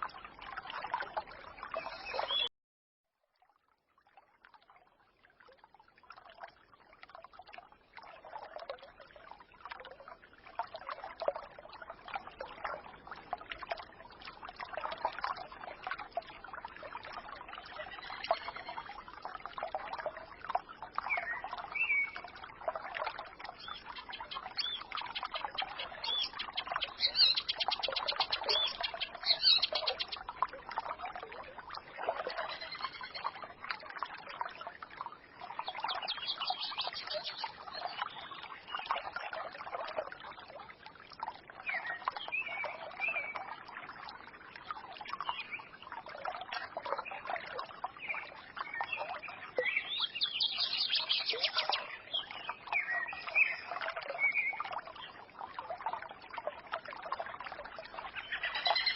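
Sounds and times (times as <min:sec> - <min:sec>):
stream trickling: 0:00.0 - 0:02.5, 0:03.1 - 0:58.9
songbirds singing: 0:01.0 - 0:02.5, 0:17.6 - 0:18.9, 0:20.1 - 0:30.4, 0:32.3 - 0:33.4, 0:35.4 - 0:39.4, 0:41.6 - 0:43.5, 0:46.7 - 0:55.2, 0:57.8 - 0:58.9.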